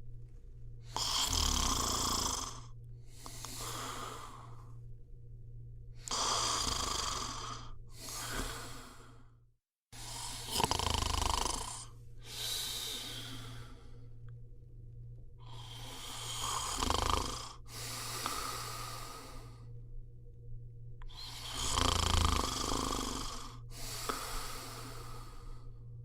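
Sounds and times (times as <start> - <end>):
steady low hum: 0.0 - 26.0
person snoring: 0.8 - 4.7, 6.0 - 9.3, 10.0 - 14.1, 15.4 - 19.7, 21.0 - 25.8.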